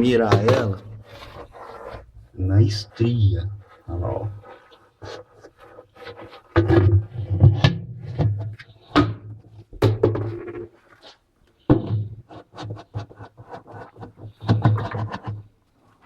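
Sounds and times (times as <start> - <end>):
plastic and metal parts knocking: 6.6 - 10.7, 11.6 - 15.5.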